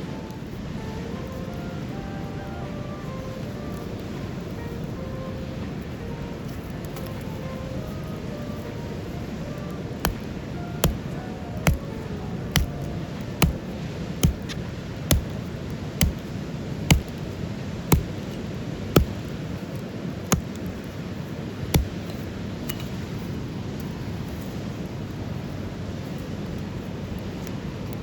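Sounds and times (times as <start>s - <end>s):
background hiss: 0.0s - 27.7s
sharp knocking strikes: 10.0s - 15.4s, 16.0s - 16.3s, 16.9s - 17.2s, 17.9s - 18.2s, 19.0s - 19.2s, 21.8s - 22.0s.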